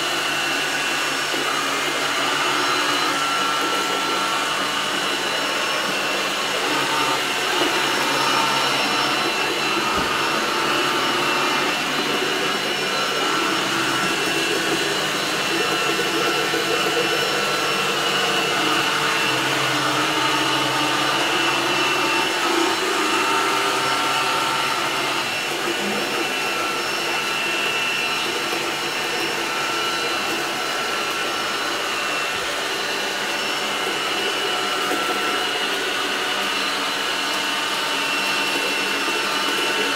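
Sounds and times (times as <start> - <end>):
robot vacuum cleaner whirring: 0.0 - 39.9.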